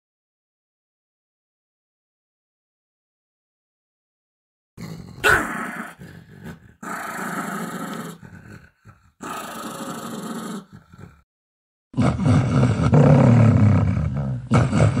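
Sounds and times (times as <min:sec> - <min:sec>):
dog growling: 0:04.8 - 0:11.2, 0:12.0 - 0:15.0.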